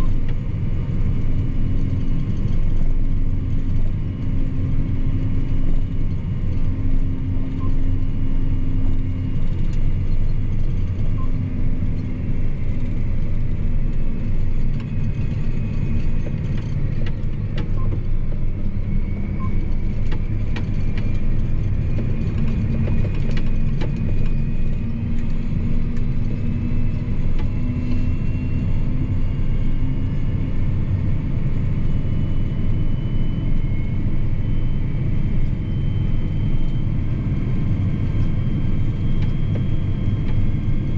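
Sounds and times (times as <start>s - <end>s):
tractor diesel engine drone: 0.0s - 40.9s.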